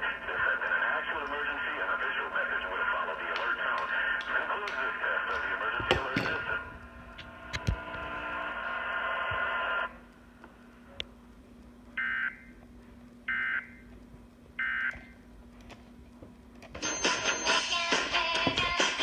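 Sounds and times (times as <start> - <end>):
faint steady hum: 0.0 - 19.0
music: 16.8 - 19.0
steady multi-pitched tone: 16.8 - 19.0.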